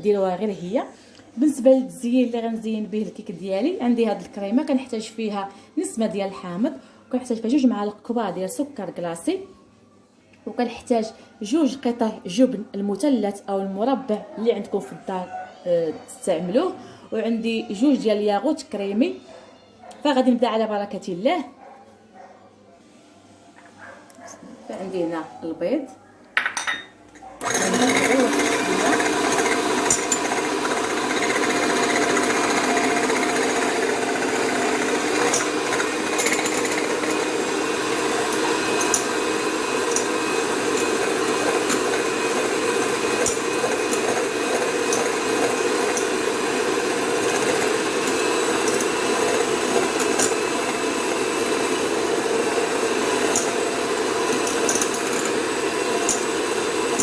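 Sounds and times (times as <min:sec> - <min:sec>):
hand mixer whipping eggs: 0:27.4 - 0:57.0.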